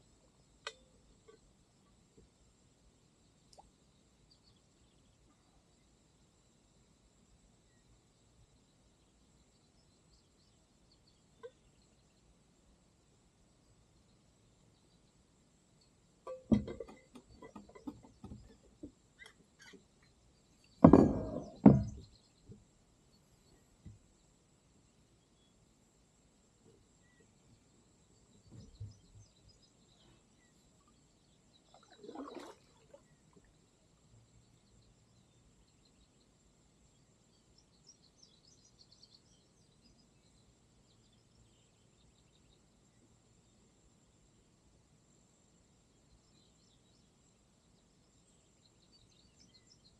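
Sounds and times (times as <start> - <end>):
bird chirping: 15.8 - 24.3
kayak paddle striking hull: 16.3 - 18.9, 20.8 - 22.1.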